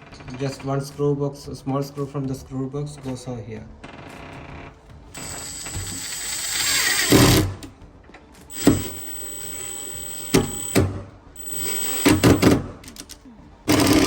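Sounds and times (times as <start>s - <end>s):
power screwdriver whining: 5.2s - 7.7s, 8.5s - 13.1s, 13.7s - 14.0s.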